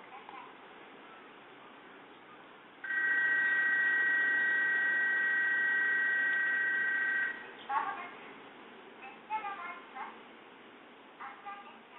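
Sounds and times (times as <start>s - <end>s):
railway warning tone: 2.9s - 7.4s.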